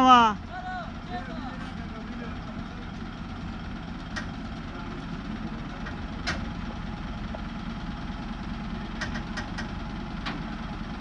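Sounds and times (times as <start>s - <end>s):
engine low rumble: 0.0s - 11.0s.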